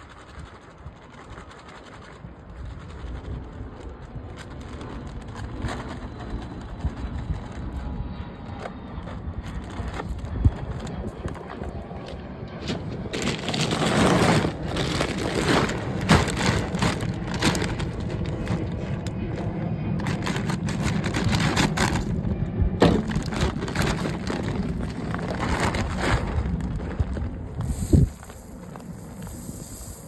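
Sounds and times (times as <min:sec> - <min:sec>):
steady low hum: 0:02.2 - 0:30.0
dry corn kernels pouring: 0:22.8 - 0:30.0.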